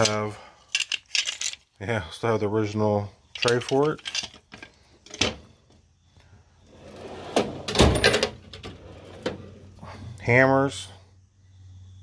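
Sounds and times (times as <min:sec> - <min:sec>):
metal tools clattering: 0:00.0 - 0:01.8, 0:03.2 - 0:05.4
tool box drawer rolling: 0:06.7 - 0:09.7.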